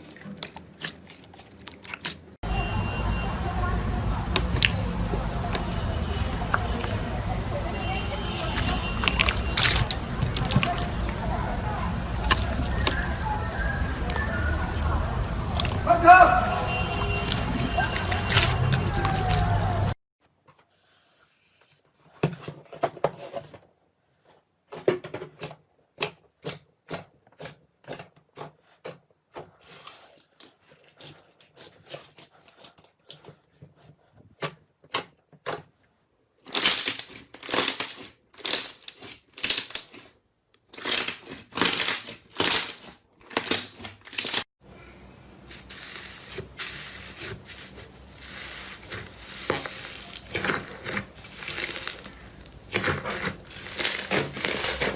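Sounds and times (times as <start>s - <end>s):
slime crackling squelches: 0.0s - 2.4s, 3.7s - 20.0s, 25.4s - 44.5s, 45.4s - 54.9s
slime clicking and popping: 8.6s - 11.2s, 12.2s - 13.2s.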